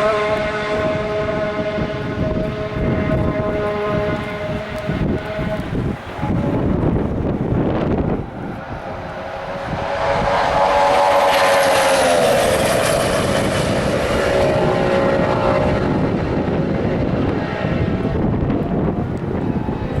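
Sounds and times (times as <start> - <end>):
racing car engine passing: 0.0 - 20.0.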